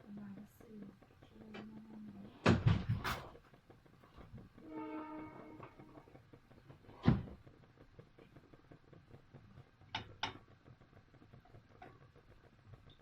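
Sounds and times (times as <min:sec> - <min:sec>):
steady horn-like tone: 0:04.6 - 0:05.9.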